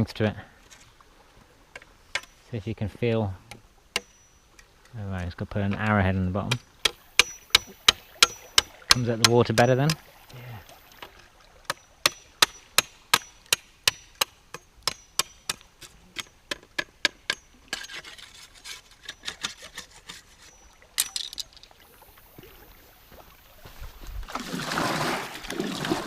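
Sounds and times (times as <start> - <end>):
scraping and shaving bamboo: 17.7 - 20.6.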